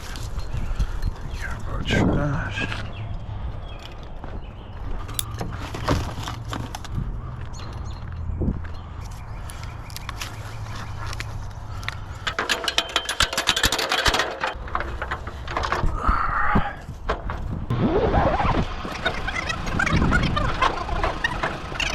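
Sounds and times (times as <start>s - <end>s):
gear clicking and rattling: 5.0s - 8.8s, 9.5s - 16.0s.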